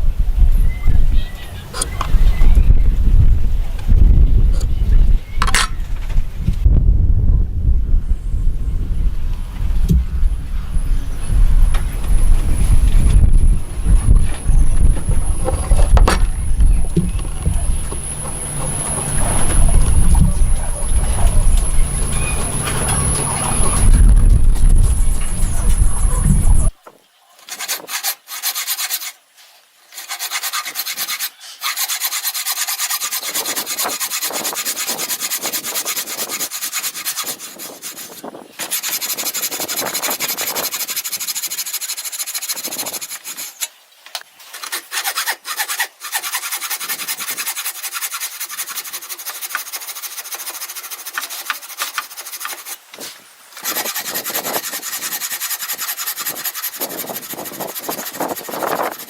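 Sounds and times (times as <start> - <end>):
hand tool rasping on wood: 27.5 - 29.2, 30.0 - 43.7, 44.5 - 59.0.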